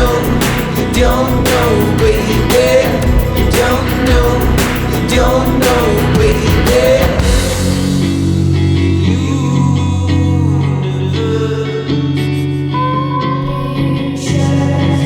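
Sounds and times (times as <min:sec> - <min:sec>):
drums: 0:00.0 - 0:09.2
rock band playing: 0:00.0 - 0:09.7
sustained bass notes: 0:00.0 - 0:12.1
held guitar chords: 0:00.0 - 0:15.0.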